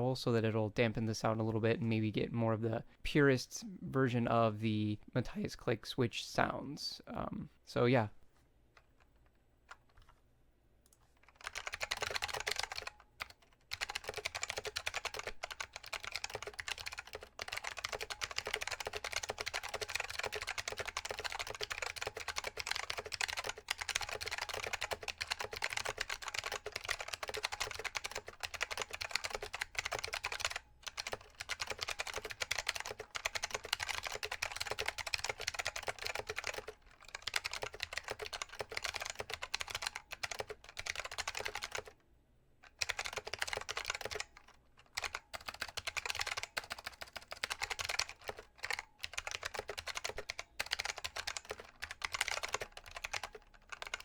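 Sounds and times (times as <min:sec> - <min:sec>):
fast typing on clicky keyboard: 0:11.2 - 0:42.0, 0:42.7 - 0:54.0.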